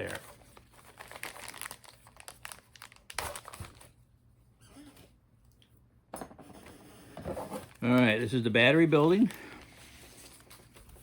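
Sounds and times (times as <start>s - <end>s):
plastic bag crinkling: 0.0s - 4.0s.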